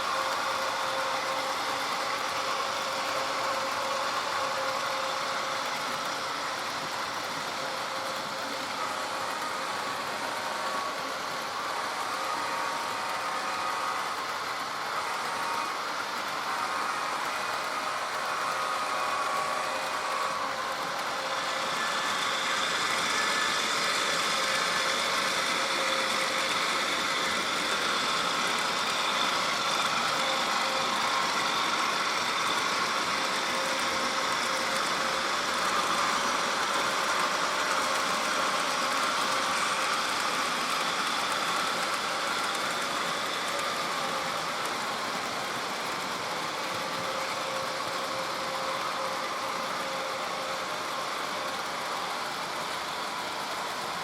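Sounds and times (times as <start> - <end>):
model train diesel engine sound: 0.0 - 54.0.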